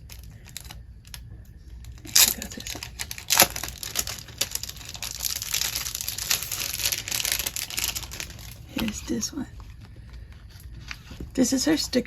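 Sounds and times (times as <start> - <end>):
sharp packaging crackles: 0.0 - 1.2, 1.8 - 9.8
packaging crinkling and rustling: 0.0 - 12.0.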